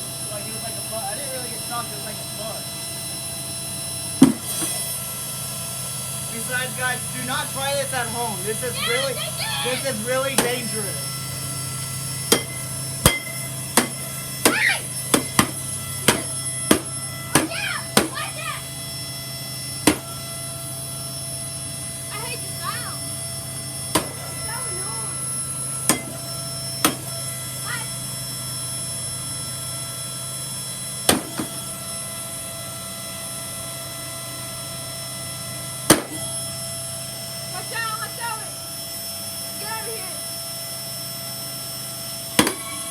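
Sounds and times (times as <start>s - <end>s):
steady low hum: 0.0s - 42.9s
vacuum cleaner motor whining: 0.0s - 42.9s
whacks on vacuum cleaner: 4.2s - 4.8s, 13.8s - 18.3s, 19.9s - 20.1s, 23.9s - 24.2s, 26.8s - 27.1s, 31.1s - 31.6s, 35.9s - 36.2s, 42.4s - 42.8s
sharp knock: 19.9s - 20.1s.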